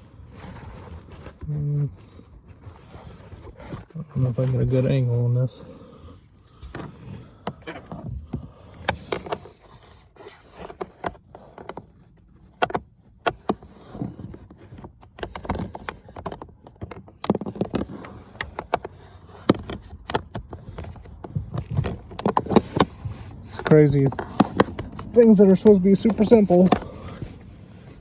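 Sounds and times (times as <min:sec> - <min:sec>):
plastic clicks and knocks: 0:10.6 - 0:27.3.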